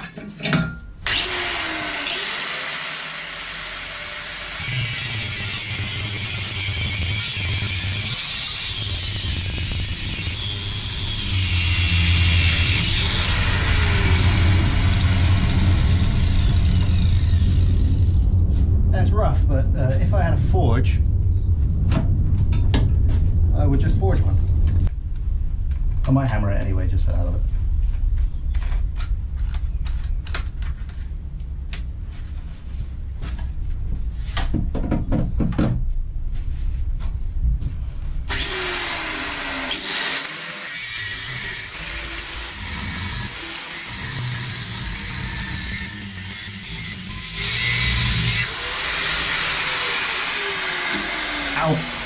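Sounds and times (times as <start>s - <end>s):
electric grinder on metal: 1.1s - 18.2s, 38.3s - 52.0s
steady low rumble: 7.6s - 34.8s, 35.8s - 39.4s.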